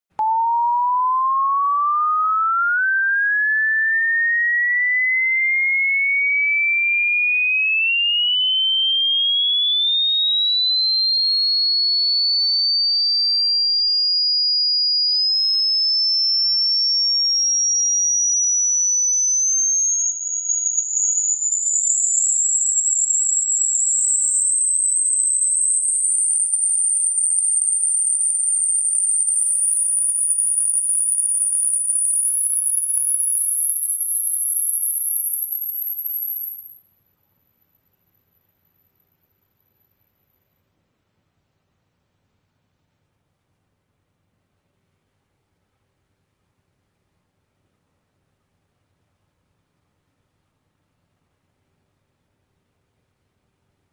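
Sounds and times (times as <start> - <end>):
pure tone rising in pitch: 0.1 - 13.0, 18.7 - 21.6.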